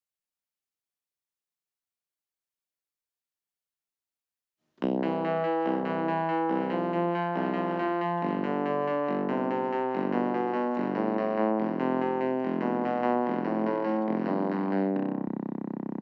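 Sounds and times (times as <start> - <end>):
keyboard chords music: 4.8 - 16.0.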